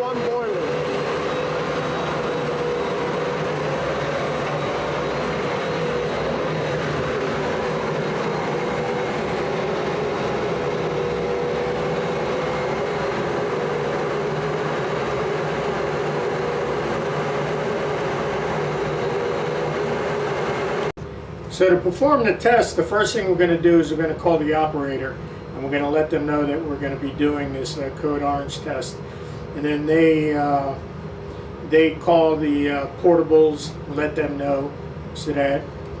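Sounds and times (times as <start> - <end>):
machinery rushing noise: 0.0 - 20.9
constant machinery hum: 0.0 - 36.0.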